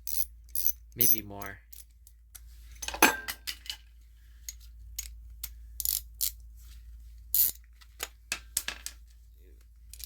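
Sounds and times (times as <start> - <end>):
hand ratchet clicking: 5.8 - 6.4.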